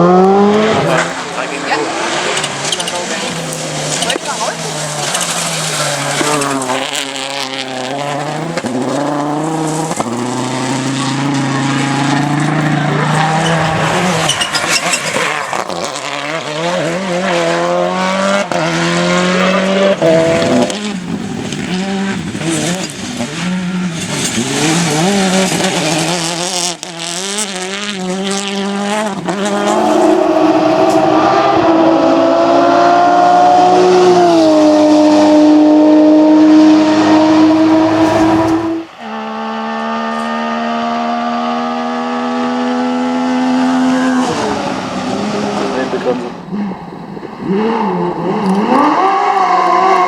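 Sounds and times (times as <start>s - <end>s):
rally car engines revving: 0.0s - 50.0s
tyre squeal: 0.9s - 6.8s, 8.7s - 18.6s.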